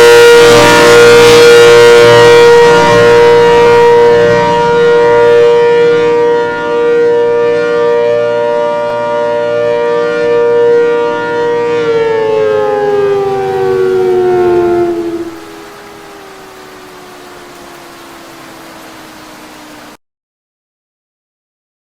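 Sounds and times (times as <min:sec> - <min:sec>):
warning siren wailing: 0:00.0 - 0:20.0.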